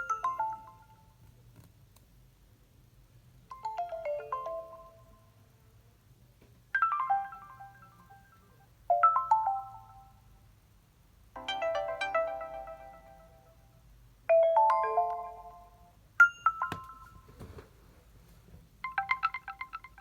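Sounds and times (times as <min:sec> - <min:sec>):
phone melodic alert chimes: 0:00.0 - 0:01.1, 0:03.5 - 0:05.1, 0:06.8 - 0:10.2, 0:11.4 - 0:13.6, 0:14.3 - 0:17.3, 0:18.8 - 0:20.0.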